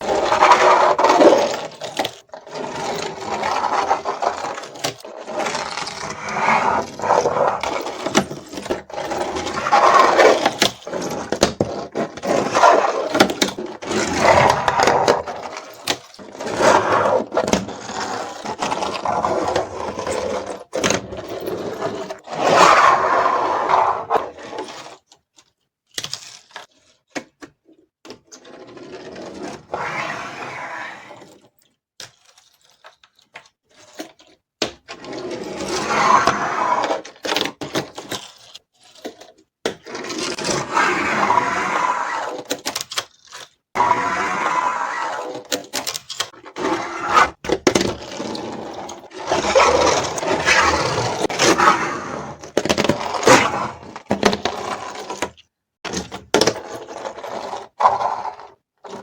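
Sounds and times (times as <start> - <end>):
creaking scrapes: 5.2 - 25.0, 46.3 - 55.2.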